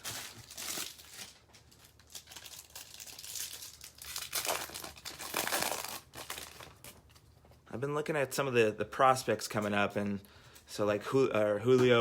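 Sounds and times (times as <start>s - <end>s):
foil wrapper crinkling and tearing: 0.0s - 7.2s.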